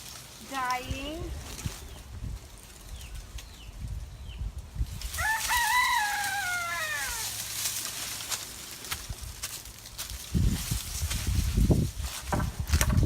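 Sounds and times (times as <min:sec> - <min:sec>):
rooster crowing: 0:05.1 - 0:07.4.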